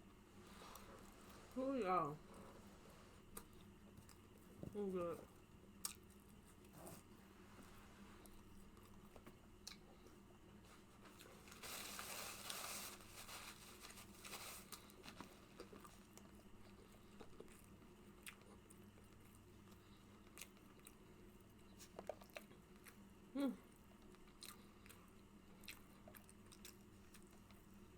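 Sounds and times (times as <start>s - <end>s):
person chewing: 5.7s - 7.1s, 8.2s - 10.2s, 14.7s - 21.1s, 21.7s - 23.0s, 24.0s - 27.8s.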